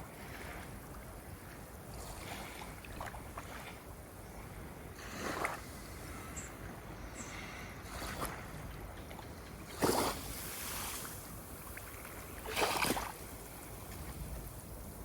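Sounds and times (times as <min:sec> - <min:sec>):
ocean waves lapping: 0:00.0 - 0:15.0
short splashes: 0:09.7 - 0:11.2, 0:12.4 - 0:13.2.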